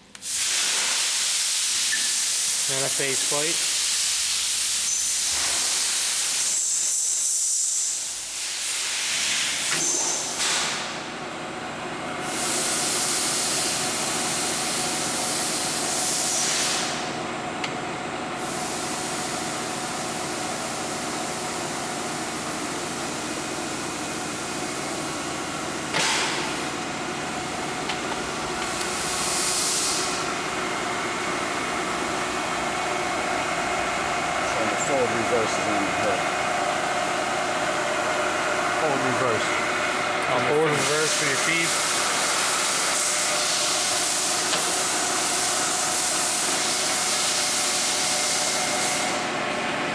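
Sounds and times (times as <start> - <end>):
loud hiss: 0.2 - 10.8, 25.9 - 36.8, 40.3 - 49.2
machine hum: 13.8 - 47.2.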